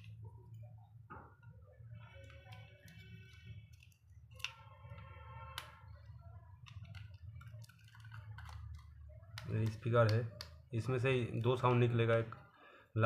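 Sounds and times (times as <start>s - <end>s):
plastic phone parts clicking: 2.2s - 10.6s.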